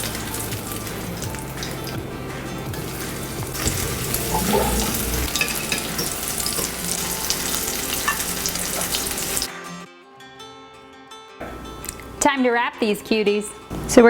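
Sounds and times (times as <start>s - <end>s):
cheese sizzling in frying pan: 0.0s - 2.0s, 2.8s - 9.5s.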